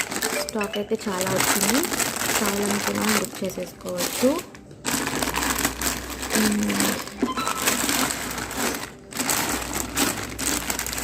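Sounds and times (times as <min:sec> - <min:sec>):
plastic packaging crinkling: 0:00.0 - 0:11.0.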